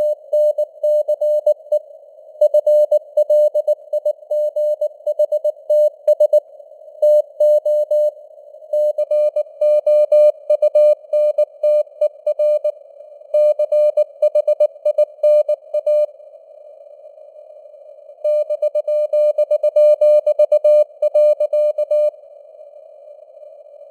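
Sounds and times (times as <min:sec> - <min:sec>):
morse code beeps: 0:00.0 - 0:01.8.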